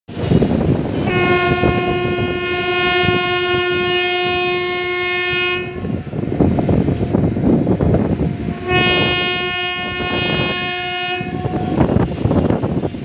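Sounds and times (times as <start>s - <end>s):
rumble and clatter of train: 0.1s - 13.0s
train horn blast: 1.0s - 6.1s, 8.5s - 12.1s.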